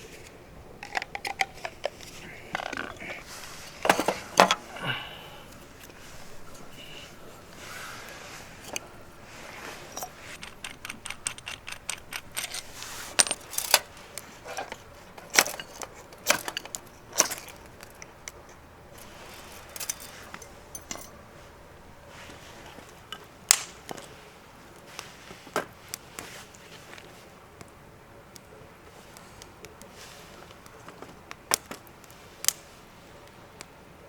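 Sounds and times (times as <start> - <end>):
small metal objects clinking: 9.8 - 18.1, 19.0 - 21.2.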